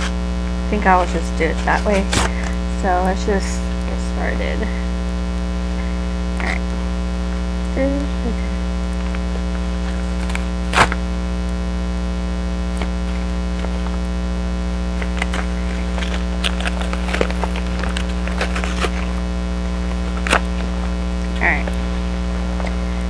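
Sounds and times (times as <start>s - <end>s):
electrical mains hum: 0.0s - 23.0s
package being opened by hand: 0.8s - 2.8s, 6.4s - 7.5s, 8.9s - 11.1s, 12.7s - 14.2s, 14.8s - 23.0s.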